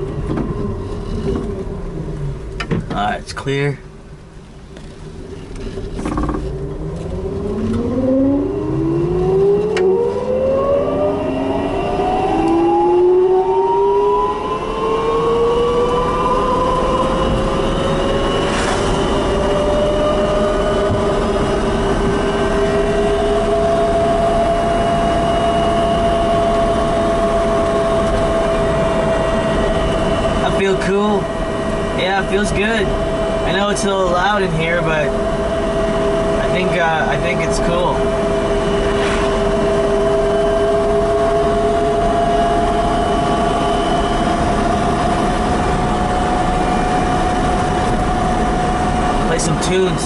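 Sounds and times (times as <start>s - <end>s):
tyre and road noise: 0.0s - 11.0s, 14.8s - 25.0s, 36.4s - 41.6s
electric drive whining: 4.7s - 50.0s.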